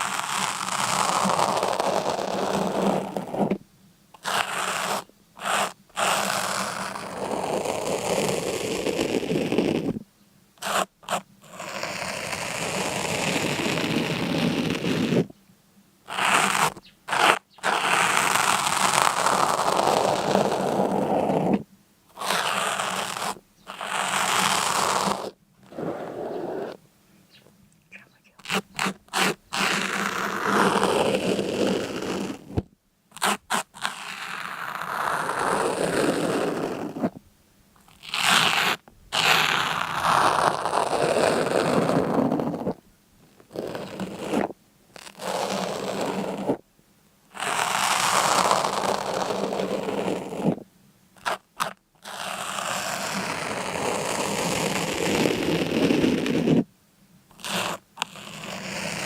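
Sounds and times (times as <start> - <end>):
long scraping strokes: 22.2 - 26.8.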